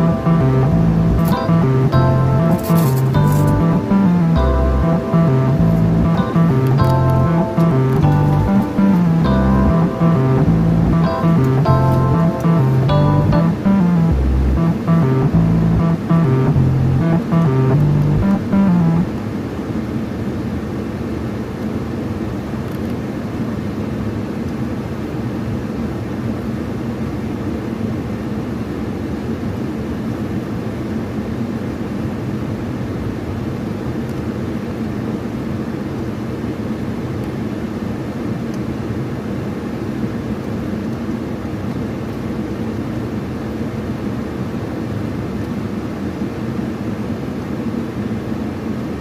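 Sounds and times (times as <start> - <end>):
steady low drone: 0.0 - 19.2.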